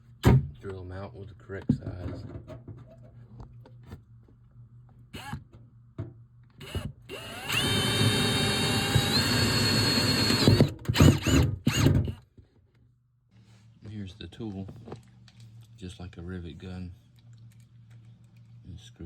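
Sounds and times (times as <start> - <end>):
electric drill drilling: 6.6 - 12.2.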